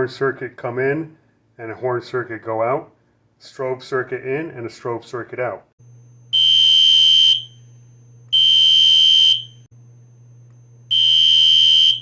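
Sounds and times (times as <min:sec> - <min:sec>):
fire alarm horn blasts: 0:06.3 - 0:07.6, 0:08.3 - 0:09.7, 0:10.9 - 0:12.0.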